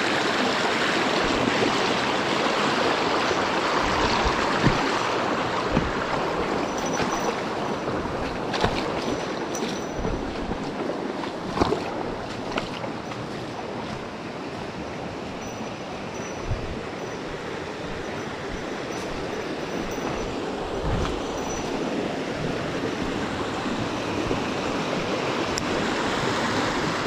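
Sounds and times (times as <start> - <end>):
stream water rushing: 0.0 - 27.0.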